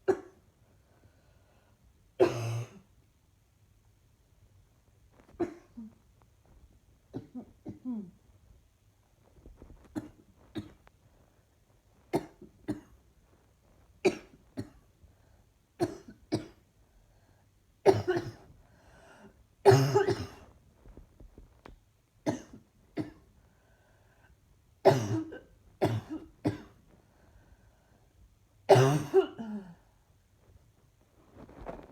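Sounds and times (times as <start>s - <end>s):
person coughing: 2.2s - 2.8s, 17.9s - 18.5s, 19.6s - 20.5s, 24.9s - 26.8s, 28.7s - 29.8s.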